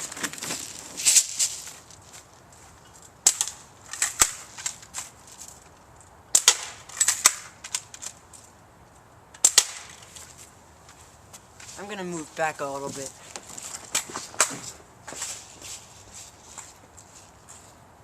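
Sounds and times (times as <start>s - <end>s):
bb rifle shots: 9.4s - 10.0s.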